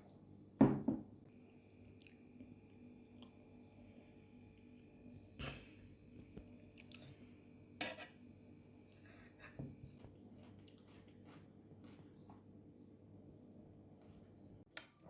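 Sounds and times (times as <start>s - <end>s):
soft clicks and clinks of eating: 6.2s - 7.4s, 10.4s - 11.1s.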